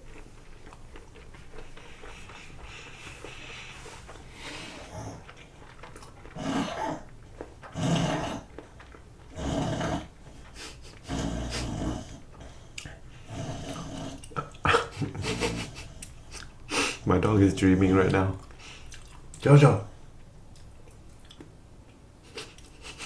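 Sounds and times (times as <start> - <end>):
dog woofing and huffing in sleep: 0.0 - 17.1, 22.2 - 23.0.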